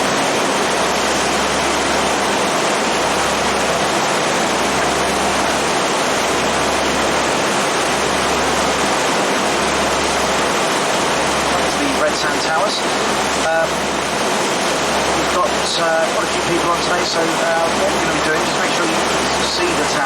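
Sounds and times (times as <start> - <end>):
water and wind rushing along boat: 0.0 - 20.0.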